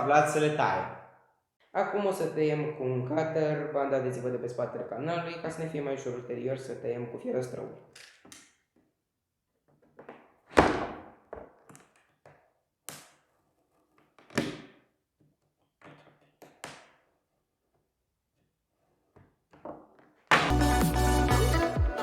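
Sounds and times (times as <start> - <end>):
music: 20.5 - 22.0.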